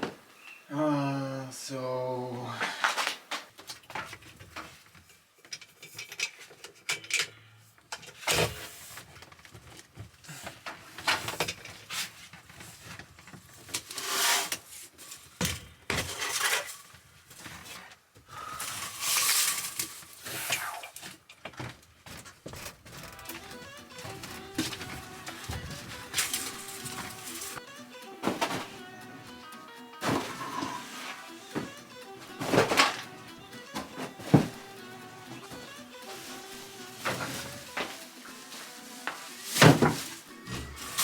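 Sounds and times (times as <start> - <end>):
hard objects knocking and clattering: 32.4 - 34.7.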